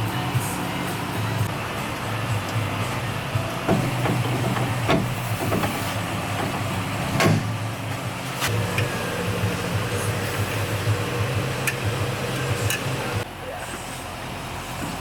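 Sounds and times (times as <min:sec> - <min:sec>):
low mechanical hum: 0:00.0 - 0:15.0
tools knocking on metal: 0:03.7 - 0:07.6.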